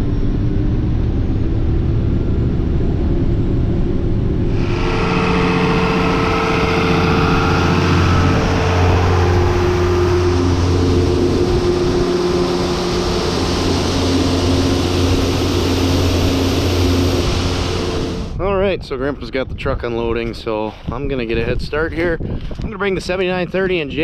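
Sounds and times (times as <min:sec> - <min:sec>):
diesel engine running under load: 0:00.0 - 0:18.4
rushing noise: 0:00.0 - 0:18.8.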